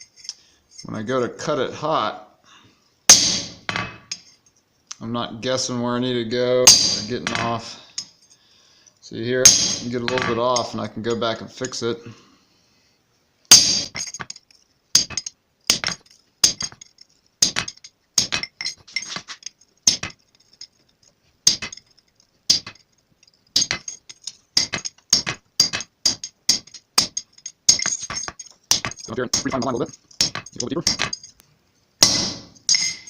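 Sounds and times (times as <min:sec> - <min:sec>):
hammer striking chisel on steel: 0:03.1 - 0:04.2, 0:06.7 - 0:07.6, 0:09.5 - 0:10.7, 0:15.0 - 0:16.8, 0:17.4 - 0:19.3, 0:19.9 - 0:20.2, 0:21.5 - 0:21.9, 0:22.5 - 0:22.8, 0:23.6 - 0:24.0, 0:24.6 - 0:31.4, 0:32.0 - 0:33.0.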